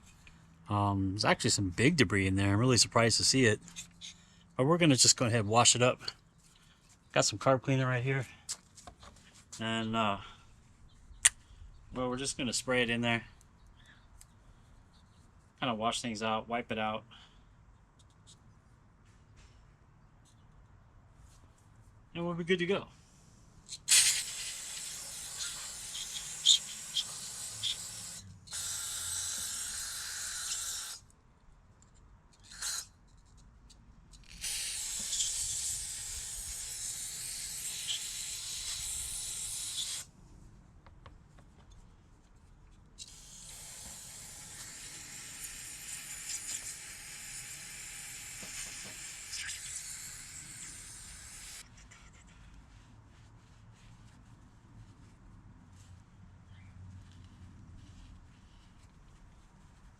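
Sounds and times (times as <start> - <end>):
aerosol can spraying: 23.9 - 29.8, 34.4 - 36.0.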